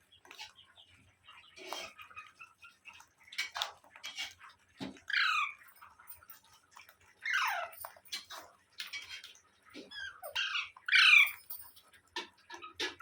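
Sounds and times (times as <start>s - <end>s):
parrot chirping: 9.9s - 11.4s.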